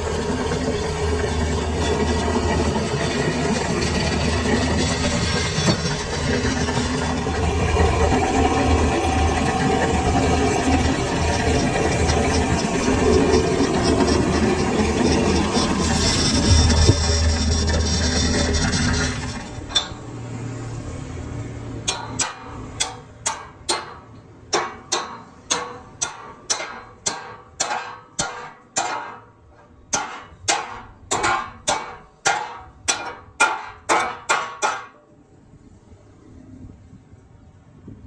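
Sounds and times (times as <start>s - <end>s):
hammer striking metal: 21.8s - 35.0s.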